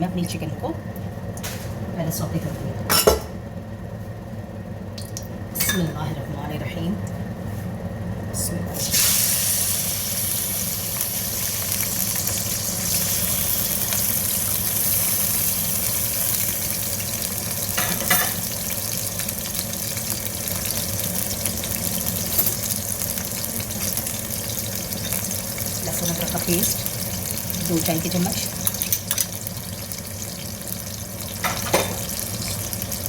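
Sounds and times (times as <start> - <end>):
chicken sizzling in oil: 8.8 - 33.0.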